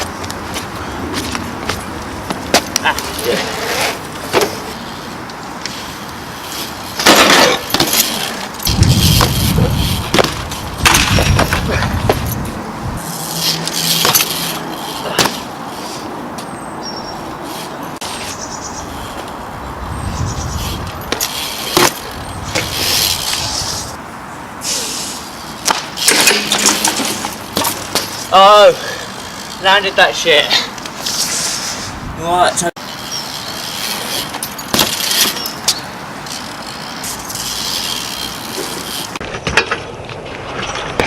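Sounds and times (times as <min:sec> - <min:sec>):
bike knocking and clanking on ground: 0:00.0 - 0:03.4, 0:04.2 - 0:04.7, 0:07.0 - 0:12.6, 0:13.4 - 0:15.5, 0:20.8 - 0:23.4, 0:25.6 - 0:28.7, 0:33.0 - 0:41.0
bike tyres rolling on concrete: 0:00.0 - 0:41.0.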